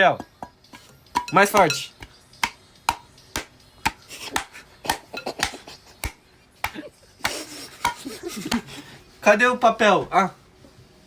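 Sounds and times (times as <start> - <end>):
sharp taps on coconut: 1.2 - 8.7.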